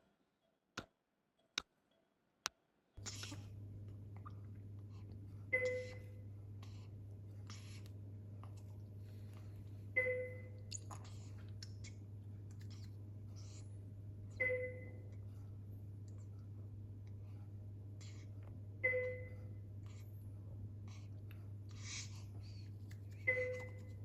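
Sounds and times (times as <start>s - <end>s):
low hum: 3.0s - 24.0s
two-tone alarm chime: 10.0s - 10.6s, 14.4s - 15.0s, 18.8s - 19.5s, 23.3s - 23.8s.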